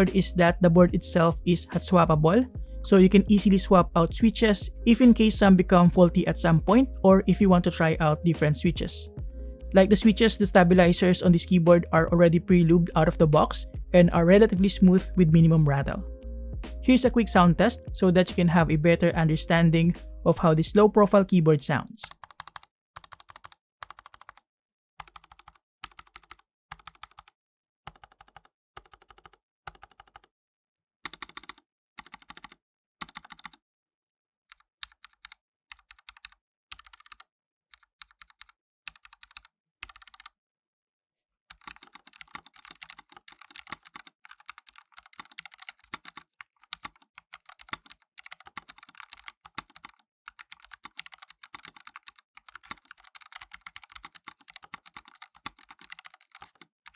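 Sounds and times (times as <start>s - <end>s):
mechanical keyboard typing: 20.4s - 24.4s, 25.0s - 27.3s, 27.9s - 30.3s, 31.1s - 33.6s, 34.5s - 40.3s, 41.5s - 56.9s.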